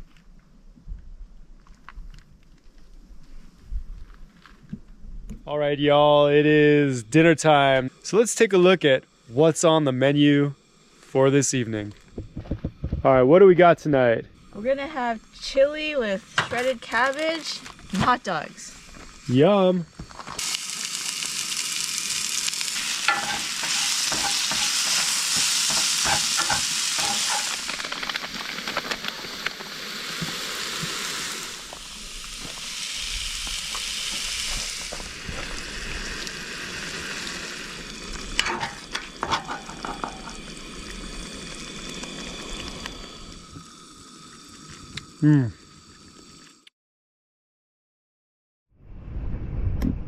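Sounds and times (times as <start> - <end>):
food sizzling in a pan: 14.4 - 46.6.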